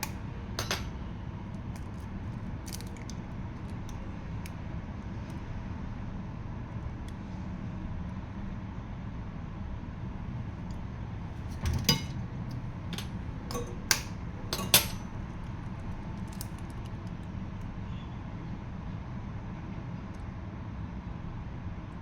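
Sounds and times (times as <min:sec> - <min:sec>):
utensils and dishes clinking: 0:00.0 - 0:00.9, 0:11.5 - 0:12.2, 0:12.8 - 0:15.3
steady low hum: 0:11.2 - 0:16.4.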